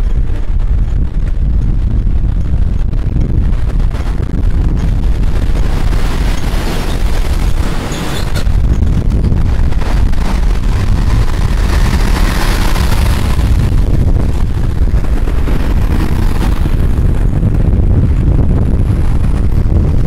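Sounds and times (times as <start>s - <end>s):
street traffic: 0.0s - 20.0s
wind rumble on microphone: 0.0s - 20.0s.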